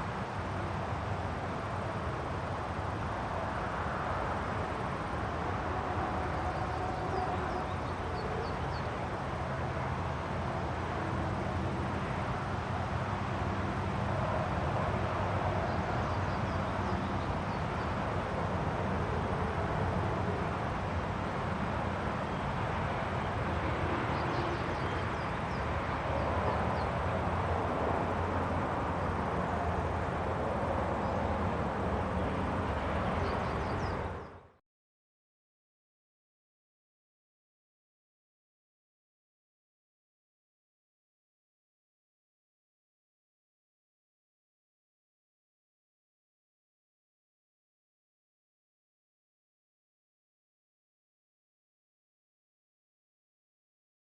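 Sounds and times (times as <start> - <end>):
outdoor wind: 0.0 - 34.6.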